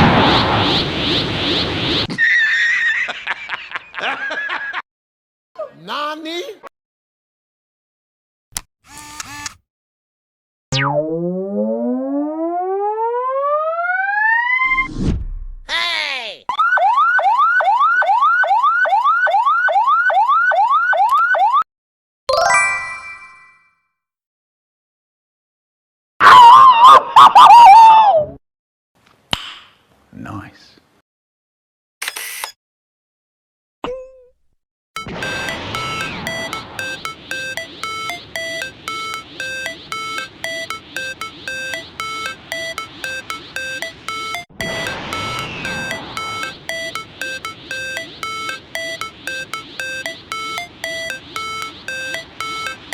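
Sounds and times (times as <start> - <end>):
electronic siren wailing: 10.7 - 14.7, 35.0 - 52.9.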